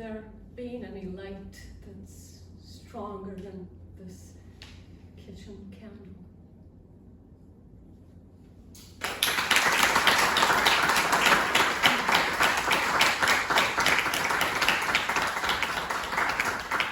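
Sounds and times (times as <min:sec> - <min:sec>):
audience applauding: 0:09.0 - 0:16.9.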